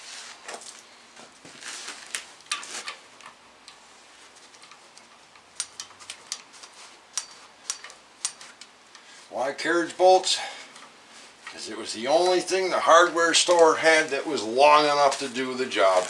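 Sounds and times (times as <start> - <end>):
rustling: 0.0 - 9.4, 13.2 - 16.0
bolts and nuts clinking: 4.4 - 9.1.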